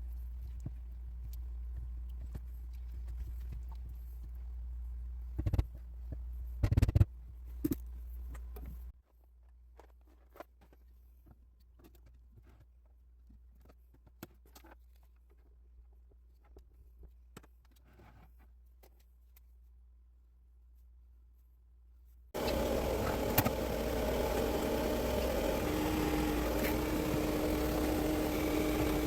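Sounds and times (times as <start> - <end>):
low hum: 22.4 - 29.0.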